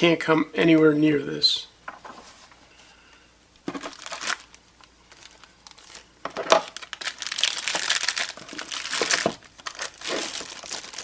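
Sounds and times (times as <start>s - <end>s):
packing material crinkling: 3.6s - 11.0s.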